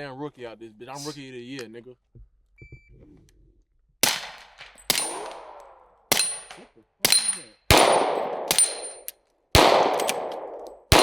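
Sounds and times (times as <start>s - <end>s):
pistol shots: 4.0s - 11.0s
steel plates clanging: 6.1s - 9.1s.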